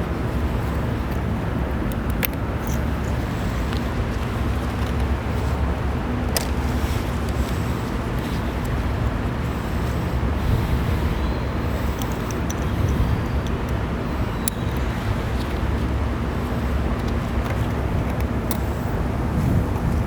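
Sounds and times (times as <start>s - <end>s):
plastic connector clicks: 1.8s - 2.8s.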